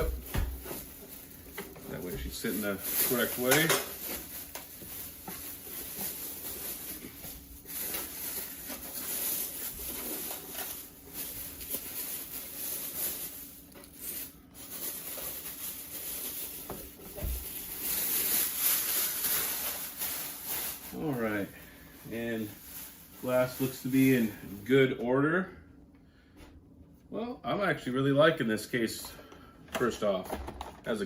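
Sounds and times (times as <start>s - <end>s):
packaging rustling and handling: 0.0s - 24.7s.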